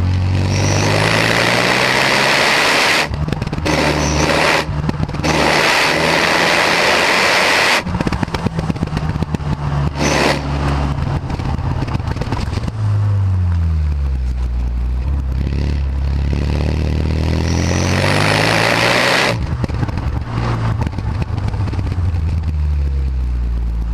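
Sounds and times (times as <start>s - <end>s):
car engine revving: 0.0s - 23.9s
loud rushing noise: 0.4s - 13.1s.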